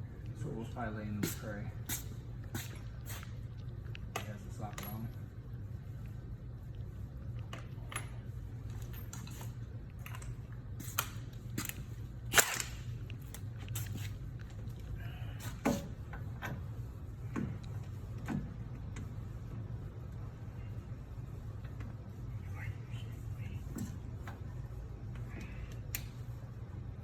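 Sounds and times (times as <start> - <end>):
steady low hum: 0.0 - 27.0
metal tools clicking and clanking: 4.2 - 5.1.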